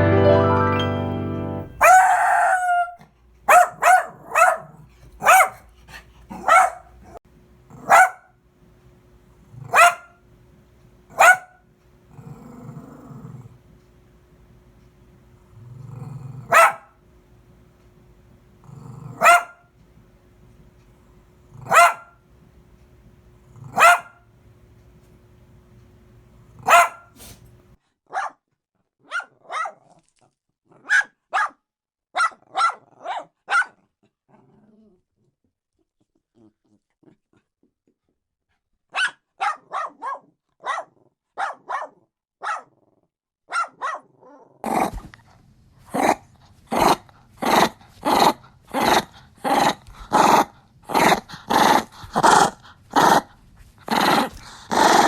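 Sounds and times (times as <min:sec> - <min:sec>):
small dog barking: 0:01.8 - 0:05.7, 0:06.3 - 0:07.2, 0:07.8 - 0:08.4, 0:09.6 - 0:10.2, 0:11.1 - 0:11.6, 0:16.4 - 0:16.9, 0:19.1 - 0:19.7, 0:21.6 - 0:22.2, 0:23.6 - 0:24.2, 0:26.6 - 0:27.2, 0:28.1 - 0:28.4, 0:29.0 - 0:29.9, 0:30.8 - 0:31.6, 0:32.2 - 0:33.8, 0:38.9 - 0:42.7, 0:43.5 - 0:44.4.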